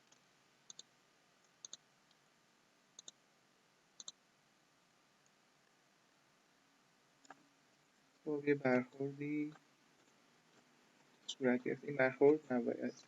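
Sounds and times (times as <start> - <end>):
computer mouse double-clicking: 0.1 - 0.9, 3.0 - 3.2.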